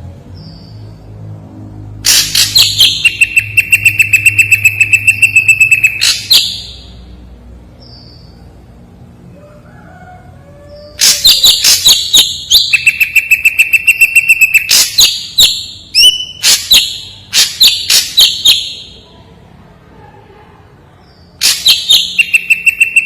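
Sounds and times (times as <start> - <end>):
bird singing sharp high notes: 2.1 - 7.0, 11.0 - 19.0, 21.4 - 23.0.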